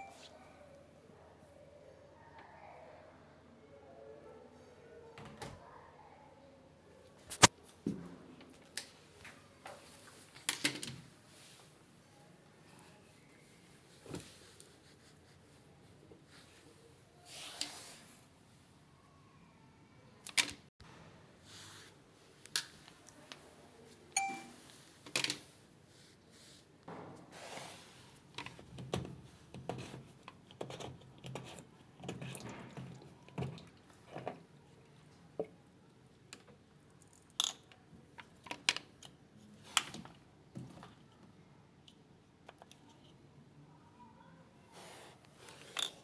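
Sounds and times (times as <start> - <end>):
hands handling tools: 7.3 - 7.5.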